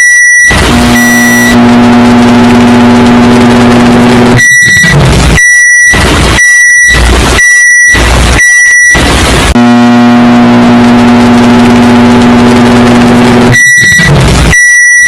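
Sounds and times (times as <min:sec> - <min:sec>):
microwave beeps: 0:00.0 - 0:01.6, 0:13.6 - 0:15.0
bursts of harsh noise: 0:00.0 - 0:15.0.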